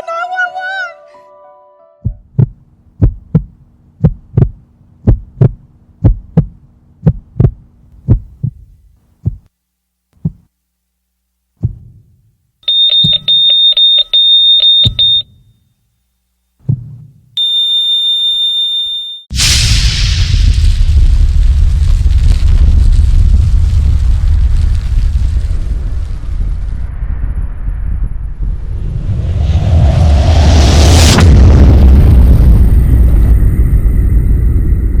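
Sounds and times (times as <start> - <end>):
heartbeat thumps: 2.0 - 9.5, 10.2 - 10.5, 11.6 - 12.2, 12.9 - 13.5, 14.7 - 15.3, 16.6 - 17.3
high electronic beeping tone: 12.7 - 15.4.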